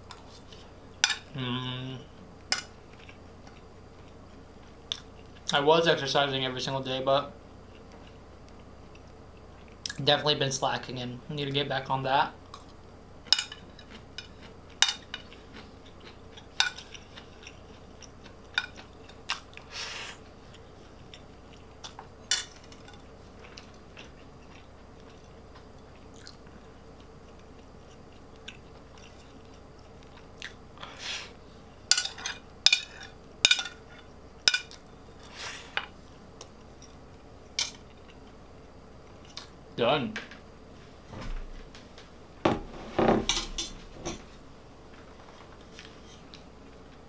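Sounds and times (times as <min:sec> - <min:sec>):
person chewing fried food: 0:02.2 - 0:05.5, 0:07.6 - 0:10.0, 0:12.5 - 0:31.5, 0:36.4 - 0:38.4, 0:39.0 - 0:39.6.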